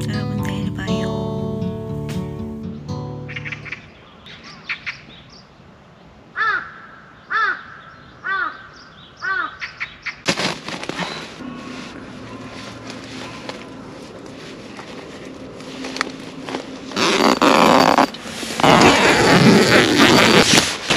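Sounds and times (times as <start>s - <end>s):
crow cawing: 6.4s - 9.9s.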